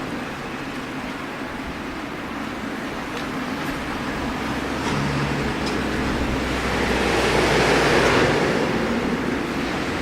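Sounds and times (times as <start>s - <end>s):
jet engine roar: 2.6s - 10.0s.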